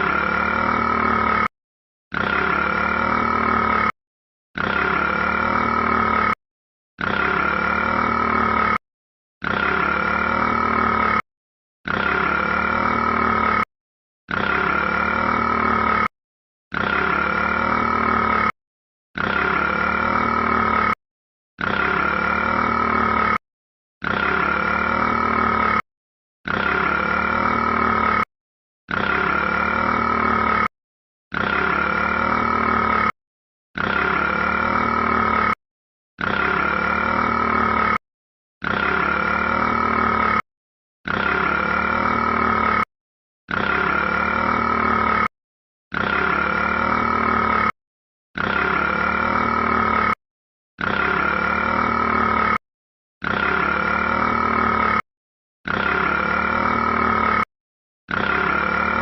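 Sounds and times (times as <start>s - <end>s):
drawn-out burp: 0.0s - 1.5s, 2.1s - 4.0s, 4.6s - 6.4s, 7.0s - 8.8s, 9.4s - 11.2s, 11.8s - 13.7s, 14.3s - 16.1s, 16.7s - 18.6s, 19.2s - 21.0s, 21.6s - 23.4s, 24.0s - 25.8s, 26.4s - 28.3s, 28.9s - 30.7s, 31.3s - 33.2s, 33.8s - 35.6s, 36.2s - 38.0s, 38.6s - 42.9s, 43.5s - 45.3s, 45.9s - 47.8s, 48.4s - 50.2s, 50.8s - 52.6s, 53.2s - 57.5s, 58.1s - 59.0s.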